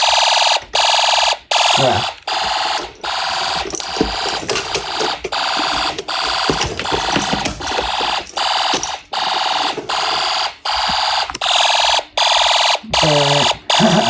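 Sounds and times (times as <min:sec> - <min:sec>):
fire alarm horn pulsing: 0:00.0 - 0:14.0.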